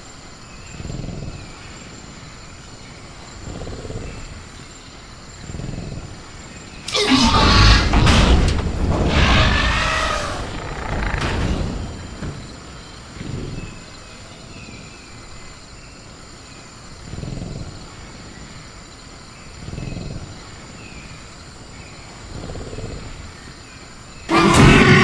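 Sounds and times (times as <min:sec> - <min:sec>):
cricket trill: 0:00.0 - 0:25.0
dinosaur growling: 0:06.9 - 0:12.4, 0:24.3 - 0:25.0.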